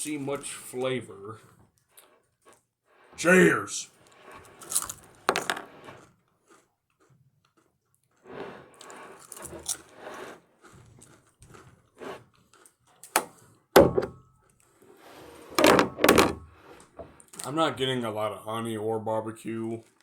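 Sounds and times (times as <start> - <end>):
chips being crunched and chewed: 4.6 - 8.2, 12.4 - 13.1
sharp knocks: 13.8 - 14.2.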